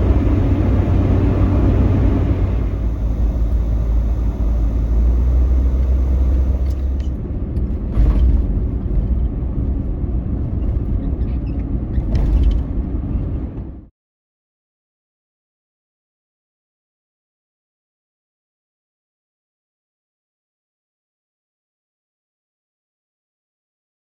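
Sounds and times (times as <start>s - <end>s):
car driving on road: 0.0s - 13.9s.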